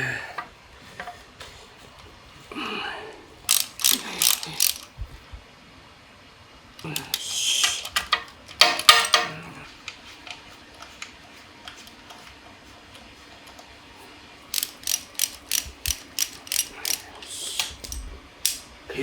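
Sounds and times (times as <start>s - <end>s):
ratchet wrench clicking: 3.5s - 4.9s, 14.5s - 18.7s.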